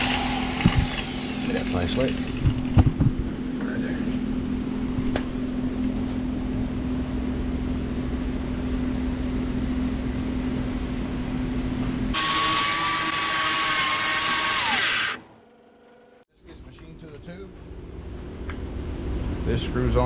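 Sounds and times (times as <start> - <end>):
power tool high-pitched whine: 0.0 - 2.4, 12.2 - 16.2
motor humming: 12.2 - 16.2.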